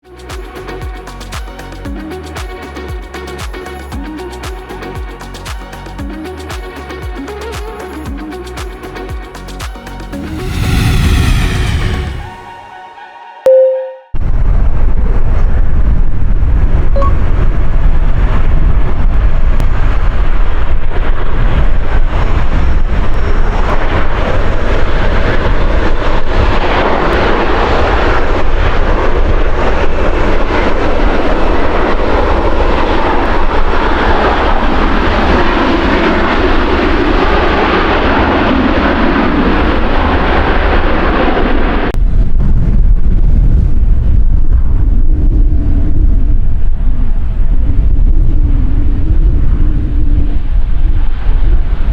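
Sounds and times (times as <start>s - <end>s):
jet engines on landing approach: 9.8s - 13.6s, 14.2s - 51.9s
wind buffeting on microphone: 14.2s - 51.9s.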